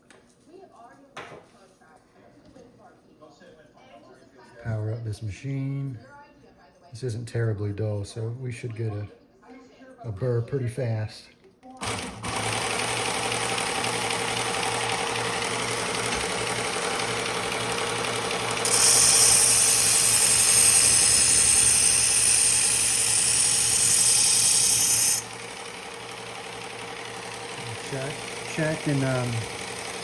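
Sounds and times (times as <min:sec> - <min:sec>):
knife-sharpening machine running: 0:11.8 - 0:30.0
knife grinding hiss: 0:18.6 - 0:25.3.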